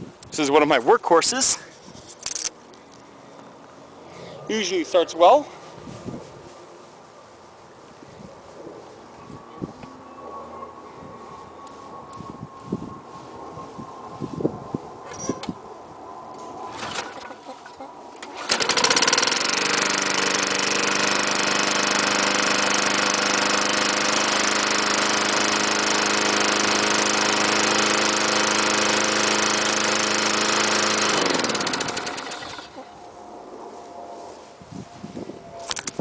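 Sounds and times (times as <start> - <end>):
lawn mower engine running: 18.2 - 32.9.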